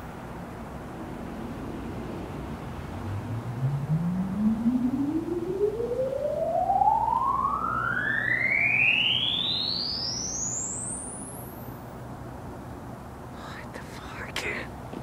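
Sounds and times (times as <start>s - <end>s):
tone sliding up in pitch: 2.9s - 11.3s.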